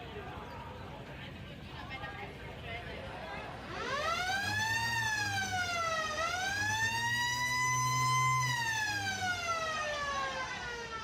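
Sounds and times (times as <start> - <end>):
siren-like wail: 3.7 - 11.0.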